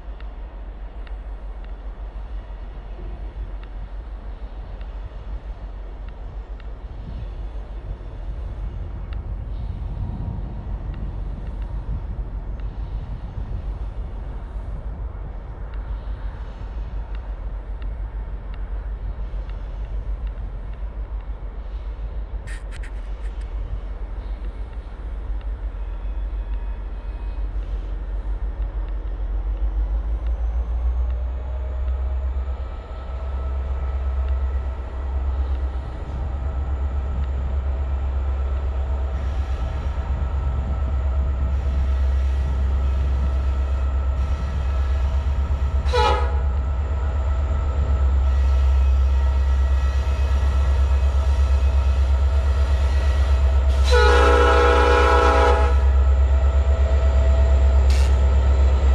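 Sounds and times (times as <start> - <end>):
freight train rumbling: 0.0 - 58.9
faint steady tones: 23.1 - 58.9.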